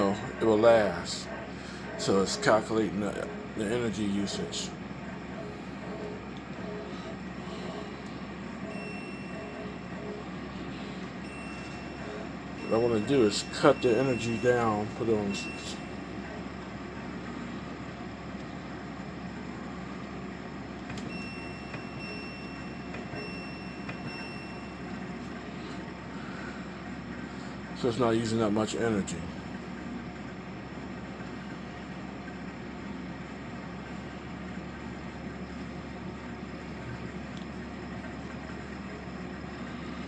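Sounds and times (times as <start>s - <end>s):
air conditioner humming: 0.0s - 40.0s
high-pitched electronic tone: 11.2s - 16.0s.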